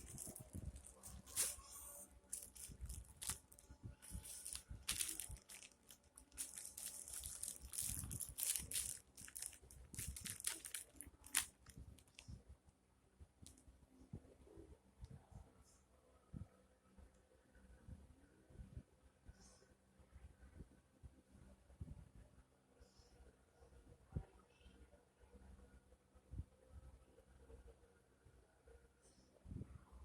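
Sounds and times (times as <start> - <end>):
plastic wrapping crinkling: 0.0 - 12.3.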